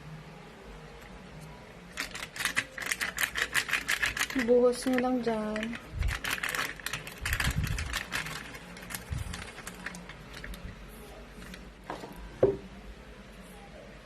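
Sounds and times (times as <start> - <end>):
plastic clicking and rattling: 2.0 - 10.6.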